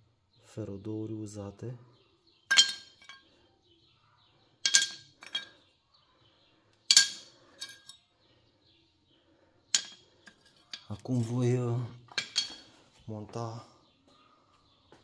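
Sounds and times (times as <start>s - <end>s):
metal brake shoes clinking: 2.5s - 3.2s, 4.6s - 5.6s, 6.9s - 8.0s, 9.7s - 11.4s, 12.1s - 12.8s.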